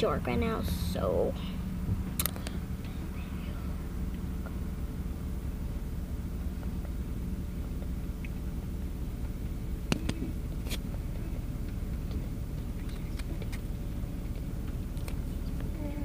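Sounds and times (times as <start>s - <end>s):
car road and engine noise: 0.0s - 16.0s
sharp clicks: 2.2s - 2.6s.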